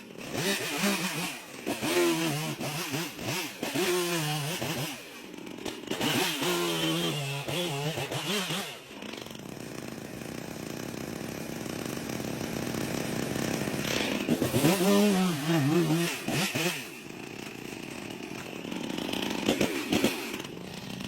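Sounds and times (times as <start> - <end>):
chainsaw engine revving: 0.0 - 21.0.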